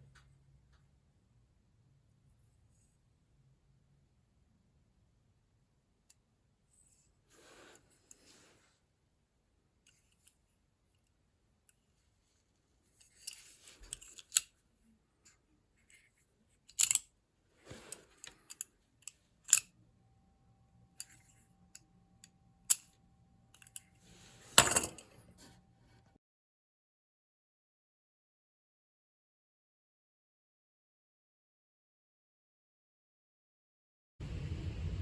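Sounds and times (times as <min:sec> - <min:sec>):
metal tool clicks and scrapes: 0:12.9 - 0:14.5, 0:15.9 - 0:19.7, 0:21.0 - 0:21.5, 0:22.7 - 0:25.5.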